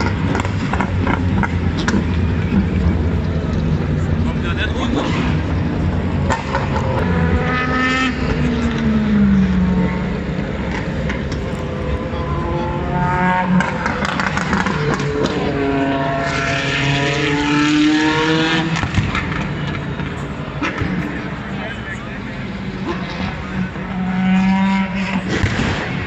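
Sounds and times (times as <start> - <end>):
race car engines passing: 0.0 - 26.0
backfire pops: 25.3 - 26.0.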